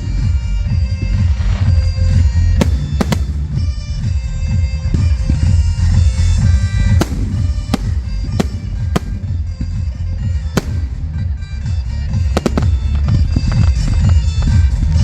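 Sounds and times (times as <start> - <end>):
music playing: 0.0 - 15.0
deep rumble: 1.0 - 15.0
fireworks cracking: 2.6 - 4.1, 6.8 - 14.5.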